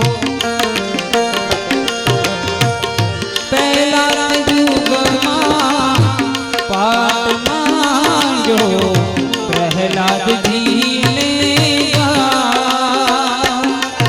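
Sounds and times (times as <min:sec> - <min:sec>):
held harmonium notes: 0:00.0 - 0:14.0
ornamented lead melody: 0:00.0 - 0:14.0.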